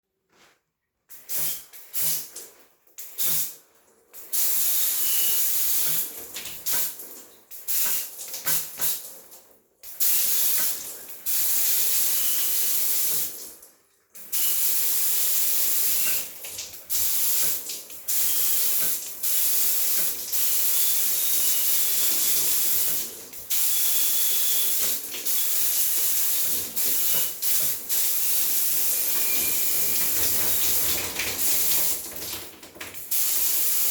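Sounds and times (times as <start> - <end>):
spray bottle spraying water: 1.1 - 2.3, 3.0 - 3.6, 7.6 - 9.1, 14.3 - 16.3, 16.9 - 32.3.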